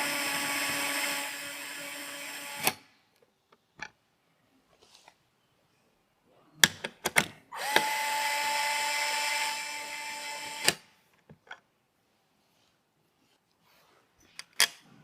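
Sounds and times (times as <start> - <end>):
electric screwdriver running: 0.0 - 2.8, 7.6 - 10.8.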